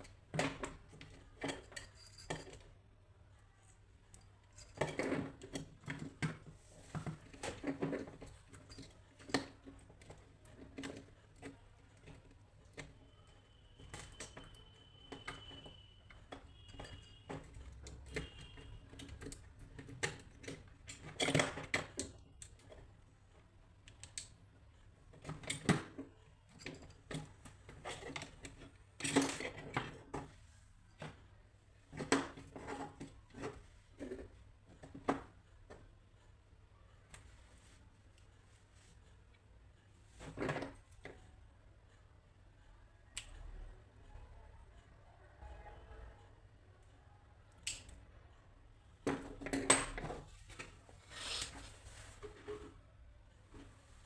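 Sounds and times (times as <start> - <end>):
small tools clicking and tapping: 0.0 - 2.8, 4.0 - 36.0, 47.5 - 48.1.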